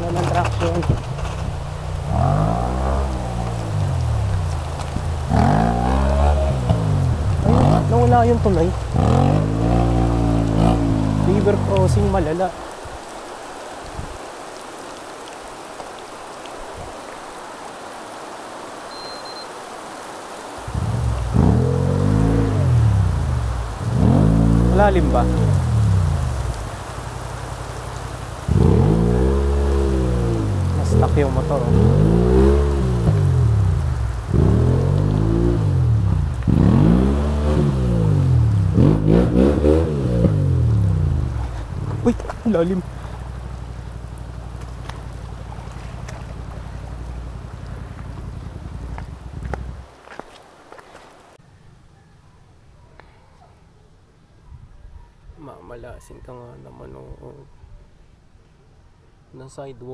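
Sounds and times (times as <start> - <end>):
motorcycle engine revving: 0.0 - 12.4, 20.7 - 49.8
rain hissing: 0.0 - 51.4
river water rushing: 0.0 - 51.4.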